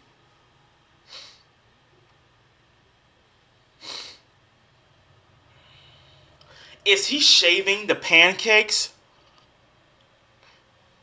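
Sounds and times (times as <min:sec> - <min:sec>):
faint breaths through nose: 0:05.5 - 0:06.8.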